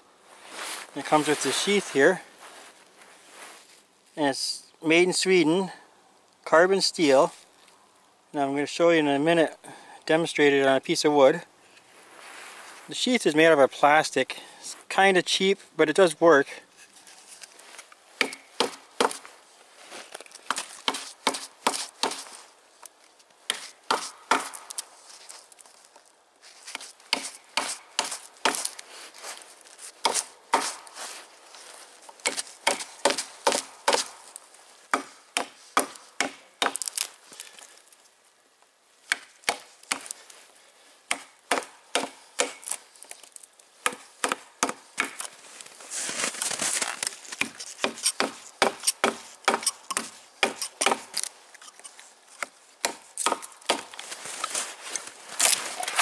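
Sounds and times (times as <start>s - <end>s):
knife chopping into wood: 18.2s - 19.2s, 20.5s - 22.2s, 23.5s - 24.8s, 27.1s - 28.7s, 30.0s - 30.9s, 32.2s - 34.2s, 34.9s - 36.9s, 41.1s - 42.7s, 43.8s - 45.2s, 47.4s - 51.1s, 52.4s - 53.9s.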